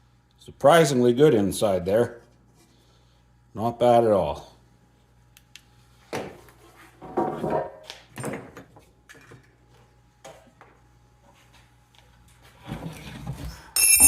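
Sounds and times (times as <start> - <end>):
metal parts clinking on workbench: 13.8 - 14.0.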